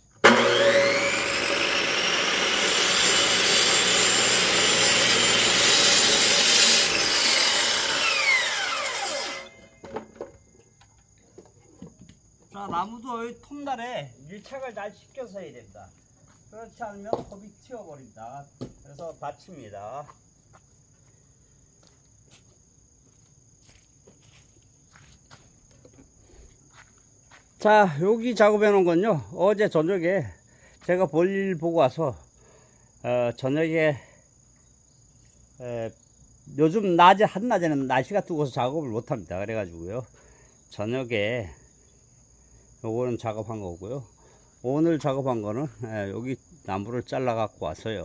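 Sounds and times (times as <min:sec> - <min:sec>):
circular saw cutting log: 0:00.0 - 0:09.8
crickets trilling: 0:05.8 - 0:48.0.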